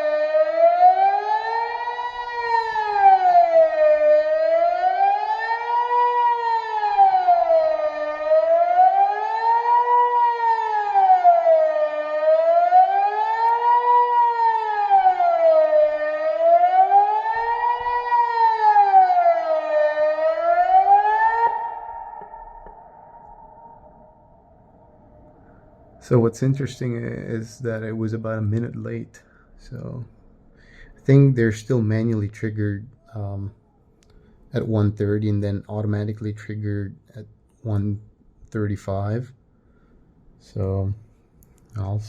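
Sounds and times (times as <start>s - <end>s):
civil defence siren wailing: 0.0s - 28.3s.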